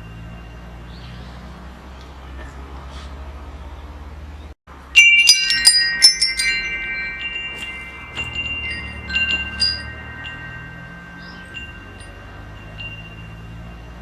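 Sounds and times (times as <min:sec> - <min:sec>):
wind chime ringing: 0:00.0 - 0:01.3, 0:04.8 - 0:14.0.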